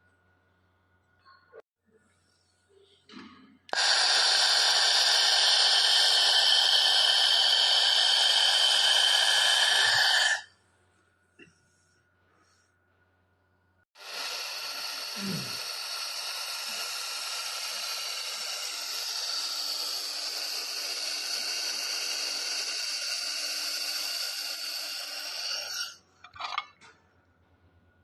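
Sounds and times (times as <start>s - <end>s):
laser welding machine hissing: 3.7s - 10.5s, 14.0s - 26.0s.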